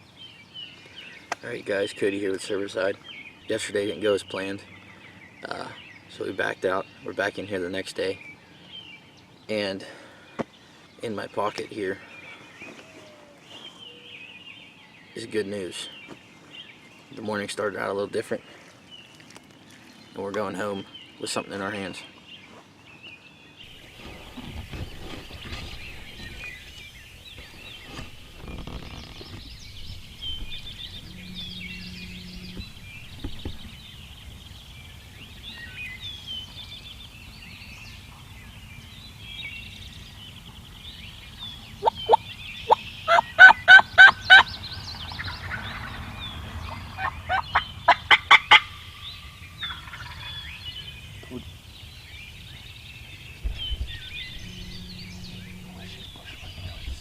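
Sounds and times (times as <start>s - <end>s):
songbirds chirping: 0.0s - 57.0s
turkey calling: 23.7s - 36.0s, 41.8s - 44.6s, 46.7s - 51.4s.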